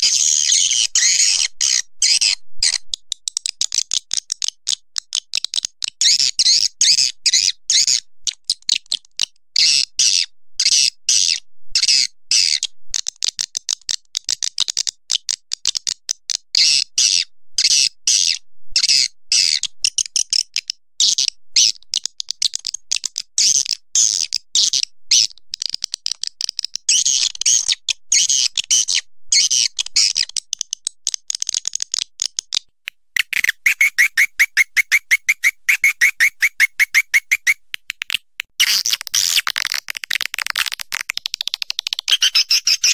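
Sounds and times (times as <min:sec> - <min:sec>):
swiftlets chirping: 0:33.2 - 0:41.1, 0:42.1 - 0:42.9.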